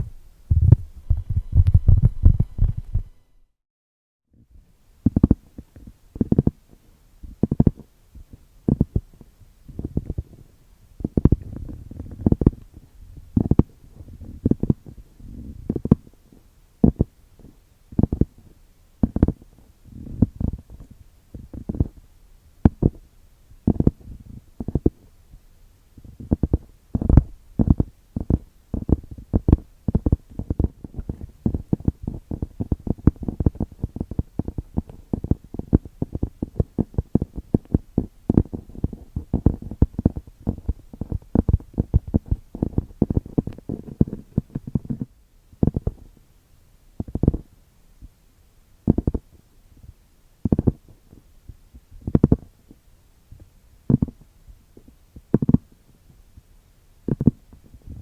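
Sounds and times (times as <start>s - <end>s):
fingers tapping on a book: 5.0s - 6.6s, 7.3s - 7.8s, 8.7s - 10.2s, 11.0s - 12.7s, 16.8s - 17.1s, 18.0s - 18.4s, 19.0s - 19.5s, 22.6s - 23.0s, 23.7s - 25.0s, 26.1s - 46.0s, 48.9s - 49.2s, 50.4s - 50.8s, 52.0s - 52.5s, 53.4s - 54.2s, 55.3s - 55.7s, 57.1s - 57.5s.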